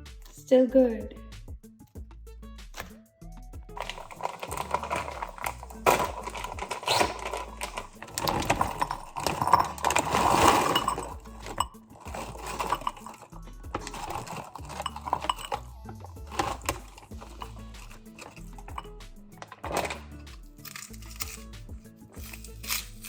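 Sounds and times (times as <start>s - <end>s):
background music with bass line: 0.0s - 23.0s
kitchen clattering and knocking: 3.8s - 20.3s.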